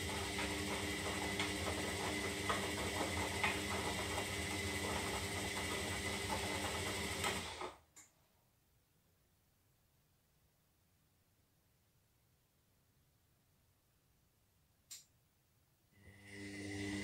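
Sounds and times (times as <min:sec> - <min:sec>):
washing machine motor hum: 0:00.0 - 0:07.8, 0:16.0 - 0:17.0.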